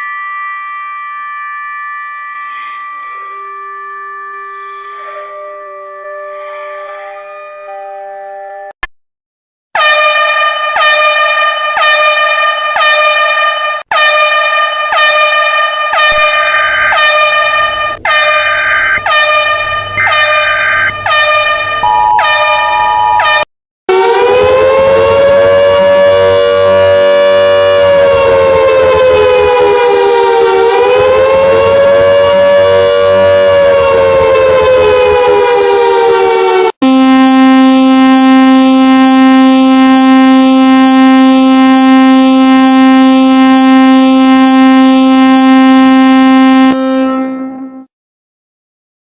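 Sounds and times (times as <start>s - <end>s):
continuous siren tone: 0.0s - 8.7s, 9.8s - 46.8s
pulsed horn-like alert tone: 9.8s - 23.4s, 36.8s - 46.8s
higher alert tone: 17.8s - 19.2s, 20.0s - 21.2s.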